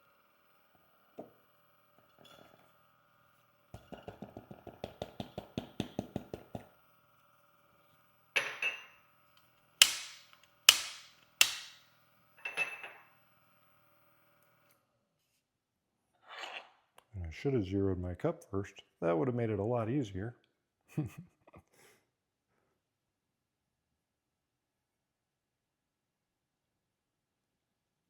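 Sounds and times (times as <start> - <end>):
light taps on grinder: 3.8 - 6.7
sharp metallic knocks: 9.8 - 11.8.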